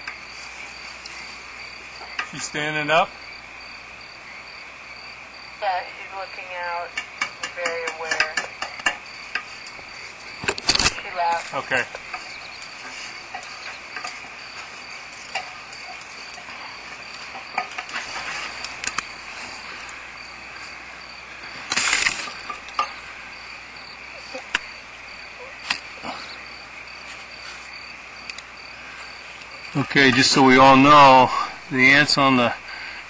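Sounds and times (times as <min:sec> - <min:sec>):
high insect trill: 0:00.0 - 0:33.0
rustling scrape: 0:09.4 - 0:20.8.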